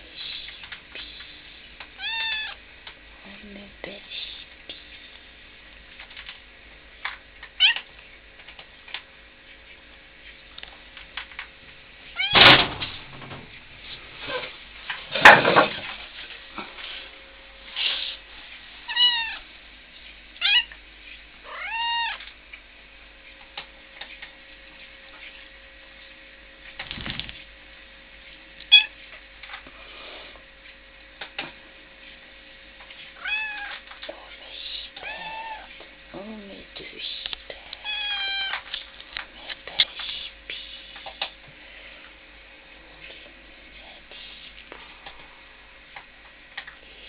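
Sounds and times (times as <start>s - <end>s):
cat meowing: 2.0s - 2.6s, 7.6s - 7.8s, 12.2s - 12.4s, 18.9s - 19.4s, 20.4s - 20.7s, 21.5s - 22.2s, 33.2s - 33.8s, 35.0s - 35.7s, 37.8s - 38.6s.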